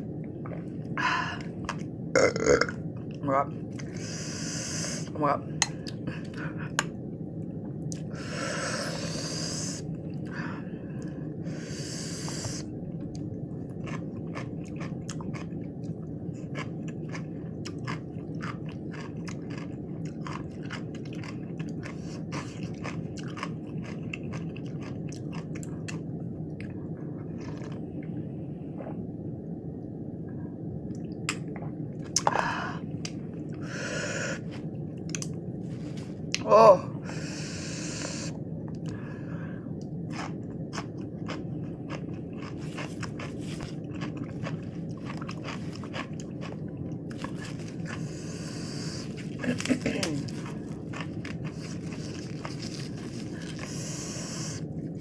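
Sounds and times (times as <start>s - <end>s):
steady low hum: 0.0s - 55.0s
chewing crunchy lettuce: 11.0s - 27.9s, 40.1s - 55.0s.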